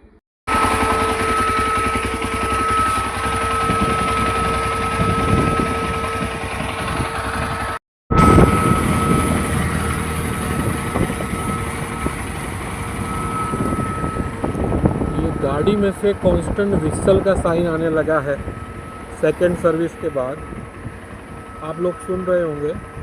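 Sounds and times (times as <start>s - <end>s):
high-pitched whistle: 0.5s - 6.5s, 8.1s - 10.0s, 12.8s - 16.5s, 21.3s - 23.0s
motorcycle engine running: 0.5s - 7.8s.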